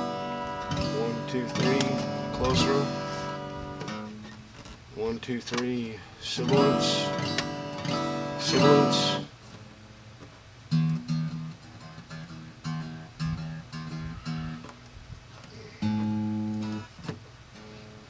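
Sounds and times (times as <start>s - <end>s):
guitar plucked notes: 0.0s - 4.8s, 6.3s - 9.4s, 10.7s - 14.9s, 15.8s - 18.0s
guitar chord strummed: 0.0s - 9.8s, 15.8s - 16.9s.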